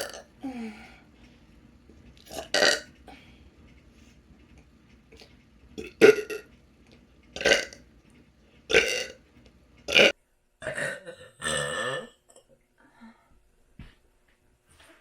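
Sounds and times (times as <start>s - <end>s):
person burping: 0.0s - 0.6s, 2.3s - 2.9s, 5.8s - 6.4s, 7.4s - 7.8s, 8.7s - 9.2s, 9.9s - 12.5s.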